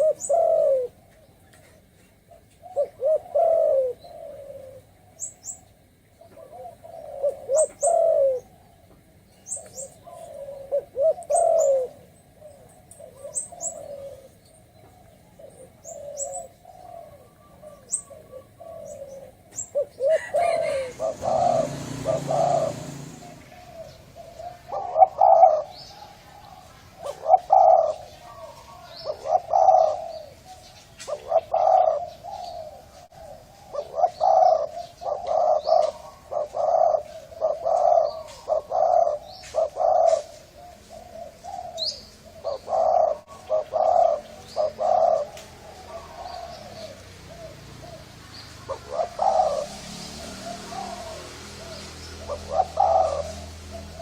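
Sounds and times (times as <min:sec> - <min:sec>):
small bird chirping: 0:00.0 - 0:32.7
dove cooing: 0:00.0 - 0:54.0.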